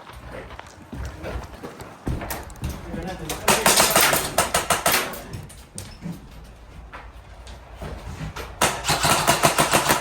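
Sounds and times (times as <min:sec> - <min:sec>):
airsoft gun firing: 0:08.6 - 0:10.0.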